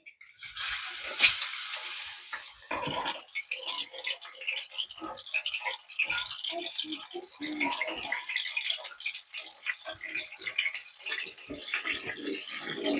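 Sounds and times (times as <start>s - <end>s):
water splashing and dripping: 0.0s - 12.9s.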